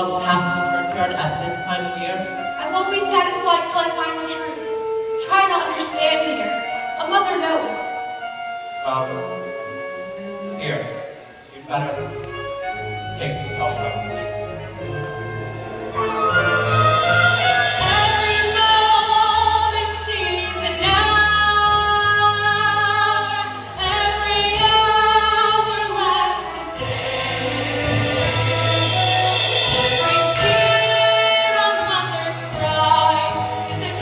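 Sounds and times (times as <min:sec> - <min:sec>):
instrumental accompaniment: 0:00.0 - 0:34.0
voices singing held notes: 0:14.6 - 0:34.0.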